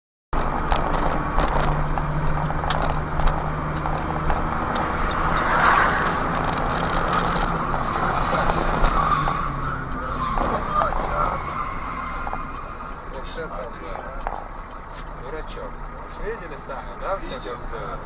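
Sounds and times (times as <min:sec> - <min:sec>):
car engine and road noise: 0:00.3 - 0:18.0.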